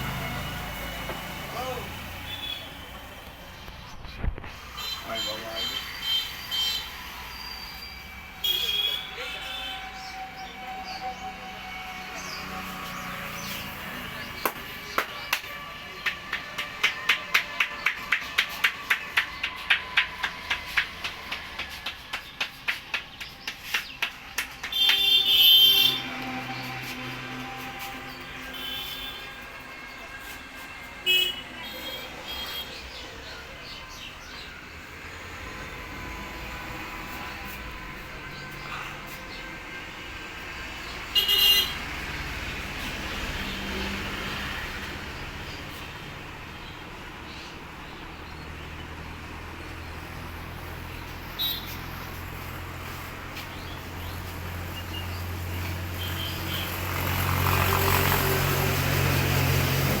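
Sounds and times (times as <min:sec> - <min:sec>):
street traffic noise: 0:00.0 - 1:00.0
car horn toots: 0:02.3 - 0:02.9, 0:08.4 - 0:09.9, 0:24.7 - 0:26.5, 0:27.8 - 0:32.7, 0:41.1 - 0:41.9
engine humming: 0:06.0 - 1:00.0.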